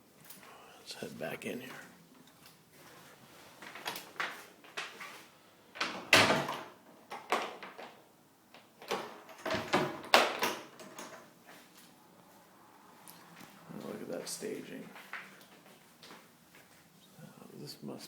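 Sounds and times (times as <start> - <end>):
door opening and closing: 5.7 - 8.0, 8.6 - 11.3.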